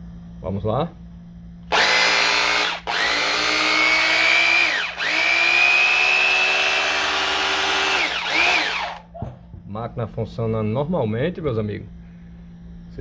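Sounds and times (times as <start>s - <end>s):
rotary hammer motor whining: 1.7s - 9.0s.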